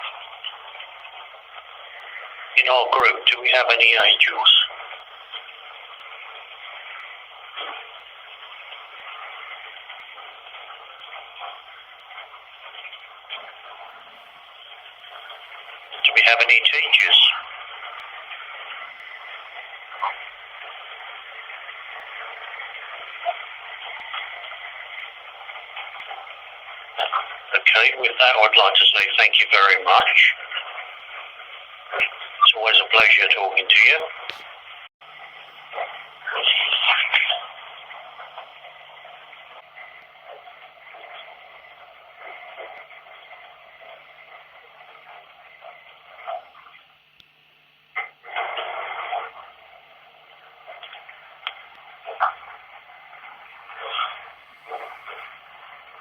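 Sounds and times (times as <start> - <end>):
faint steady hum: 0.0 - 56.0
muffled running water hiss: 0.0 - 56.0
garbled voice fragments: 16.0 - 17.4, 27.0 - 30.3, 32.0 - 34.1
running water hiss: 52.0 - 56.0.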